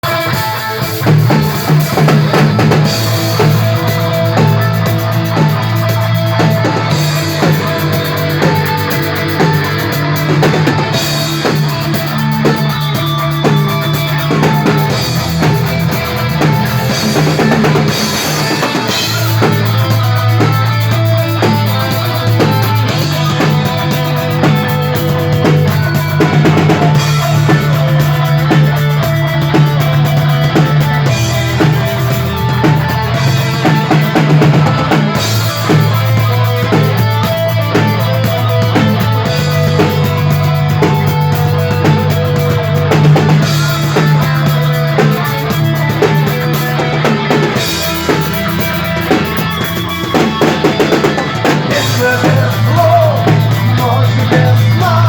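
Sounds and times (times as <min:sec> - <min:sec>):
bass guitar: 0:00.0 - 0:55.0
drum kit: 0:00.0 - 0:55.0
guitar: 0:00.0 - 0:55.0.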